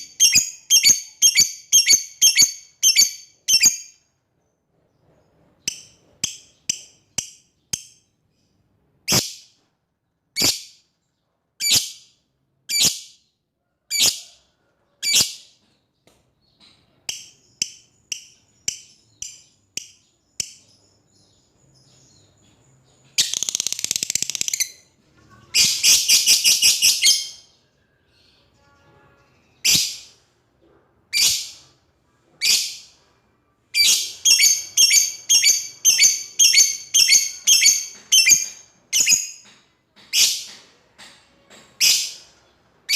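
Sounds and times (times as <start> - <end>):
lovebird fast chattering: 23.2 - 24.8.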